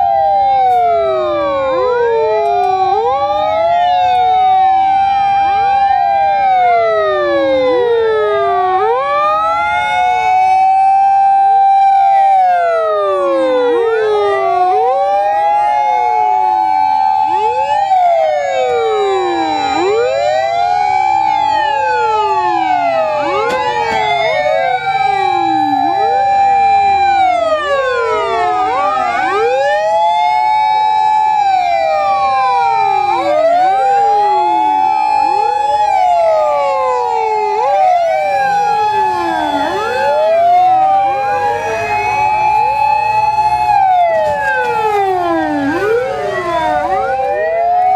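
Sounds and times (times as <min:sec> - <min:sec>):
fire engine sirens wailing: 0:00.0 - 0:47.9.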